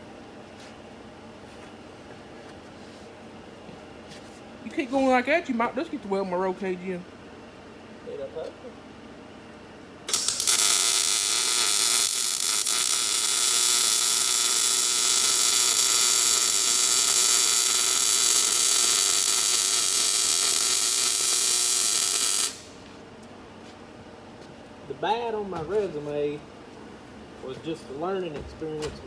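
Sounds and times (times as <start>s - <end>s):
arc welder crackling hiss: 10.1s - 23.0s.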